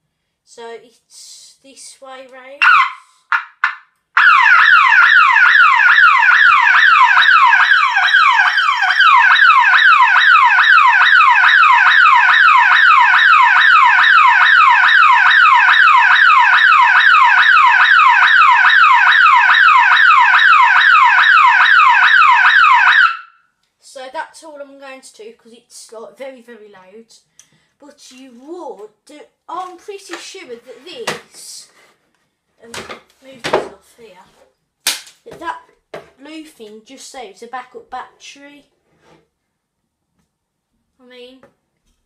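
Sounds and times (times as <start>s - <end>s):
alarm bell box siren: 2.6s - 3.0s, 4.2s - 23.4s.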